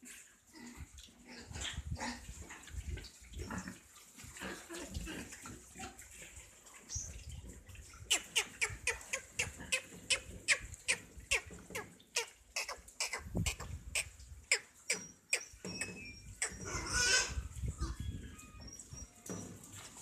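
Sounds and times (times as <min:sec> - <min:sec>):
piglets squeaking: 0:08.1 - 0:19.5.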